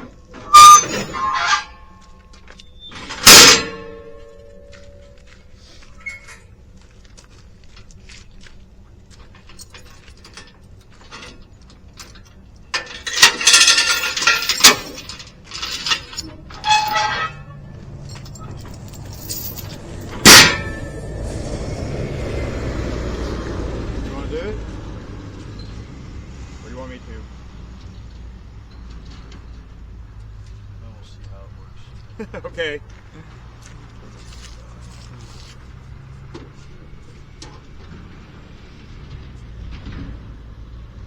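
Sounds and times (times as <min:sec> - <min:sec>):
metal clanking and rattling: 0:00.0 - 0:06.6, 0:09.1 - 0:22.4
low engine rumble: 0:00.0 - 0:41.0
sharp metal clang: 0:00.4 - 0:02.0, 0:03.0 - 0:05.1, 0:12.8 - 0:17.5, 0:18.3 - 0:21.4.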